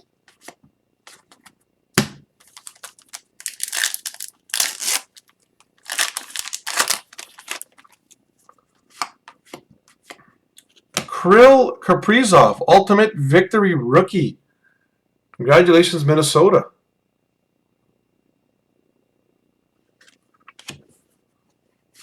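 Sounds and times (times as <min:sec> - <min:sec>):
foil wrapper crinkling and tearing: 0:02.4 - 0:08.2.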